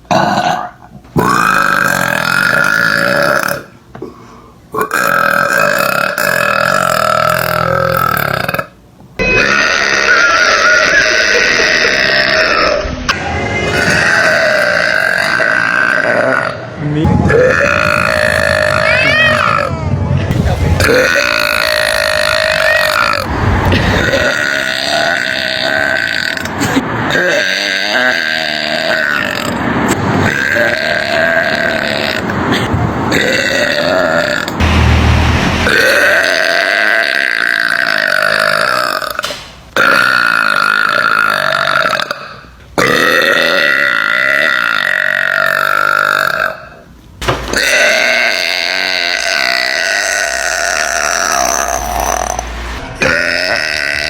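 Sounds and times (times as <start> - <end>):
woman burping: 0.1 - 3.7, 4.8 - 12.7, 20.8 - 29.5, 53.0 - 54.0.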